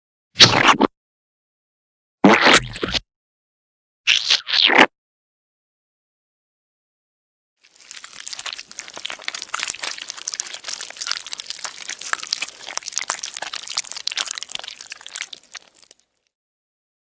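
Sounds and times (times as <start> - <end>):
slime squelching and popping: 7.6 - 16.2.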